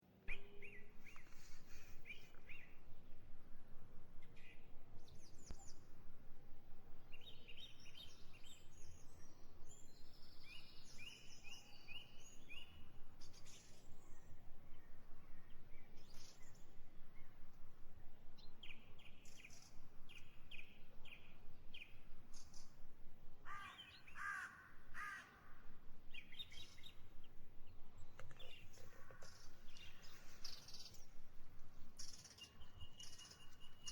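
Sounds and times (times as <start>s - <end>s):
low outdoor background: 0.0s - 33.9s
birds chirping: 26.1s - 31.3s, 31.9s - 33.9s.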